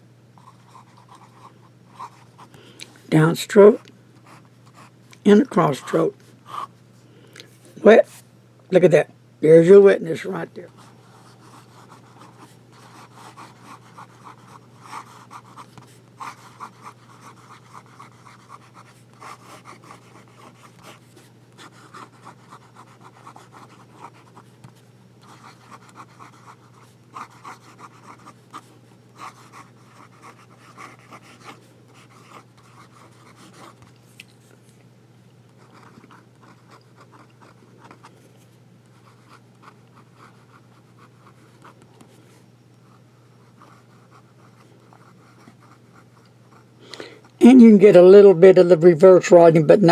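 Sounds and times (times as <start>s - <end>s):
steady low hum: 0.0s - 49.9s
pen nib scratching paper: 10.7s - 33.9s, 35.6s - 38.1s, 38.9s - 42.1s, 42.9s - 46.6s.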